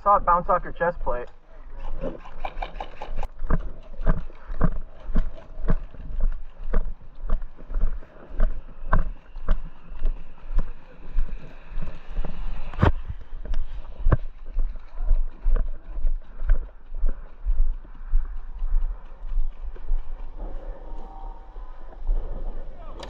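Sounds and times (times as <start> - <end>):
footsteps walking: 6.2 - 20.8.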